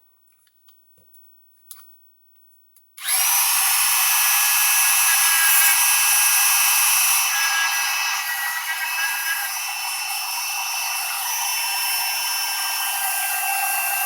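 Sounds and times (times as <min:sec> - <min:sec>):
rotary tool high whine: 0:03.0 - 0:14.0.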